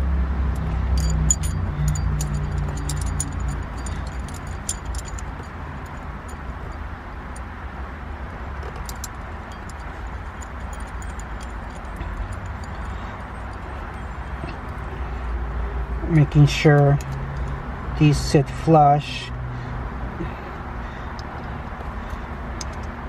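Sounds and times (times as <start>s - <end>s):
steady low rumble: 0.0s - 17.5s
metal parts and tools clinking: 0.6s - 7.6s, 8.5s - 15.0s.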